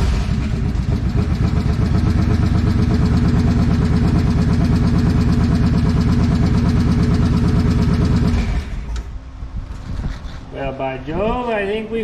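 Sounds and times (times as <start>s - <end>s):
motorcycle engine idling: 0.0s - 8.8s.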